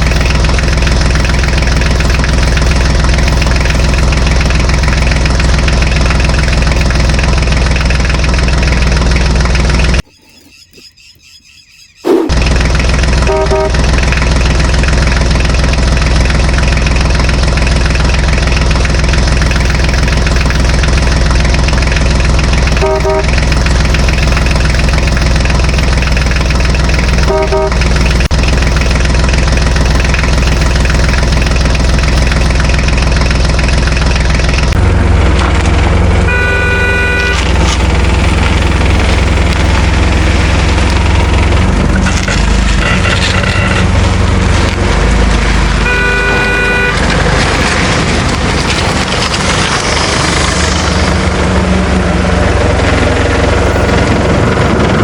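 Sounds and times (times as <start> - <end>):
vehicle engine humming: 0.0 - 55.0
high-pitched horn blast: 13.2 - 13.9, 22.8 - 23.4, 27.2 - 27.9, 36.3 - 37.7, 45.8 - 47.2
short horn toots: 13.2 - 13.9, 22.8 - 23.4, 27.3 - 27.9, 36.3 - 37.7, 42.7 - 44.0, 45.8 - 47.1.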